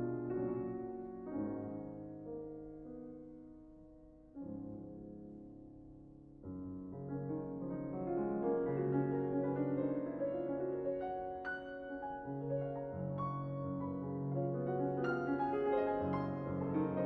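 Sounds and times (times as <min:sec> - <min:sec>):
solo piano playing: 0:00.0 - 0:17.0.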